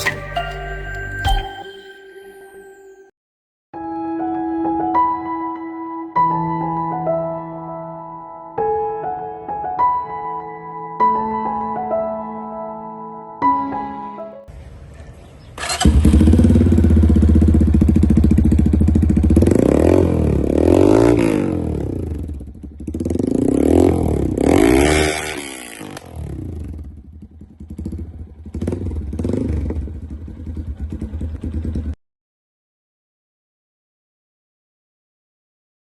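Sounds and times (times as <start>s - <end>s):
motorcycle engine revving: 15.5s - 32.0s.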